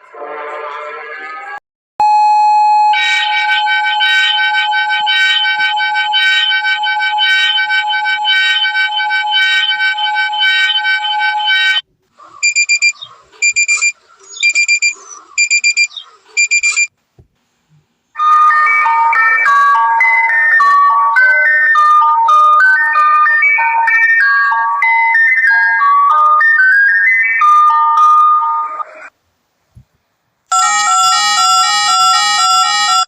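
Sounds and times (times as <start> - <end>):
harsh multi-tone alarm: 2.0 - 11.8, 12.4 - 16.9, 18.2 - 25.7, 30.5 - 33.0
short high-pitched beeps: 12.4 - 16.9
melodic tune: 18.2 - 29.1, 30.5 - 33.0.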